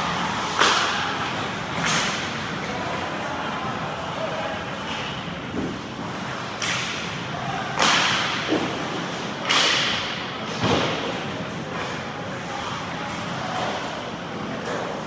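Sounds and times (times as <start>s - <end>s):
hockey hits echoing in rink: 0.0s - 2.8s, 6.4s - 7.1s, 7.7s - 11.1s.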